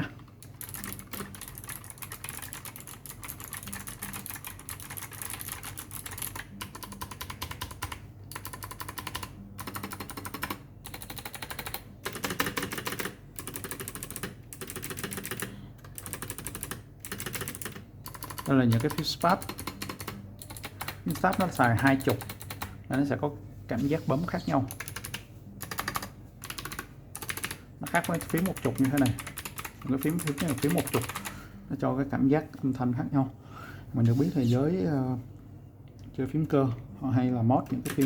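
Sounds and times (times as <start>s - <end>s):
mechanical keyboard typing: 0.4s - 23.1s, 24.7s - 31.3s, 37.7s - 38.0s.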